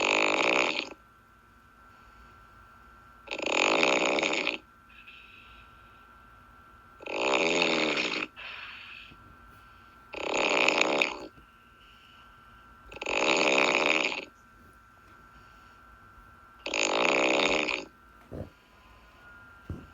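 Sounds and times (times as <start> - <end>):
person snoring: 0.0 - 1.0, 3.3 - 4.6, 7.0 - 9.1, 10.1 - 11.3, 12.9 - 14.3, 16.6 - 19.9
faint breathing: 1.8 - 3.0, 4.9 - 6.2, 8.3 - 10.2, 11.0 - 13.1, 15.1 - 16.3, 17.2 - 19.9.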